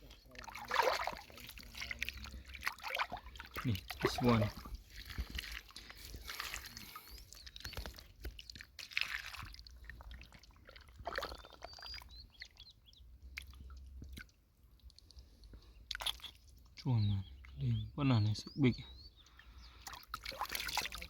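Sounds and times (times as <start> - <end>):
hands rummaging through mud and shells: 0.0 - 11.7
faint bird chirps: 3.6 - 8.6, 11.1 - 13.8, 15.6 - 21.0.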